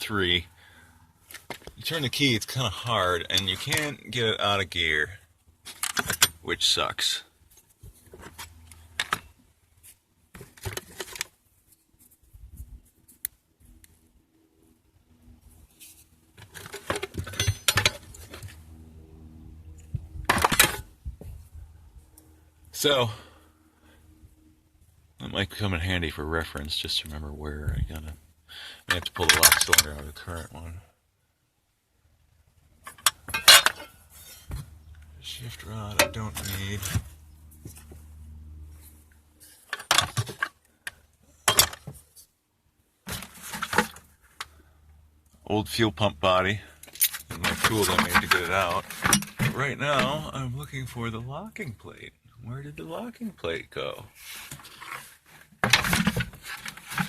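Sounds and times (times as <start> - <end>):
metal parts clinking: 5.7 - 6.4, 16.5 - 18.4, 28.9 - 29.9, 32.9 - 34.5, 41.4 - 41.9, 46.8 - 49.4
metal tools clattering: 5.7 - 6.4, 16.5 - 18.4, 32.9 - 34.5, 41.4 - 42.0, 46.9 - 50.2.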